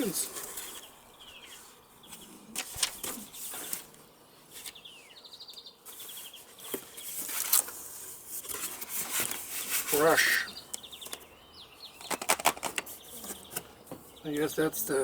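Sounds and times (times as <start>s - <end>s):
small birds chirping: 0.0s - 15.0s
packaging rustling: 2.6s - 4.0s.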